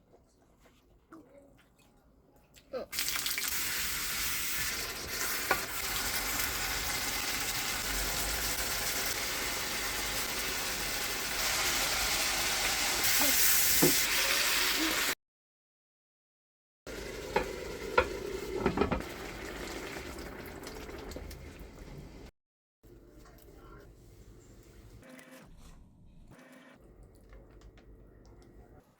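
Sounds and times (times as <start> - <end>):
food sizzling in a pan: 2.9 - 15.2, 16.9 - 22.2.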